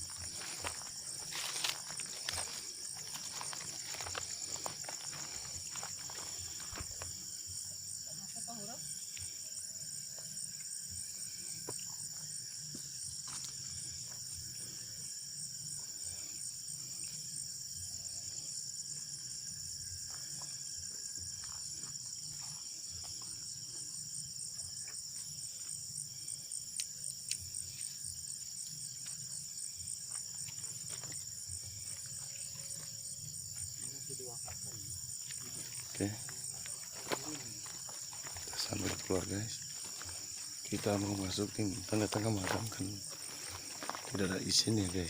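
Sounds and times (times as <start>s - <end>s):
crickets and insects trilling: 0.0s - 45.0s.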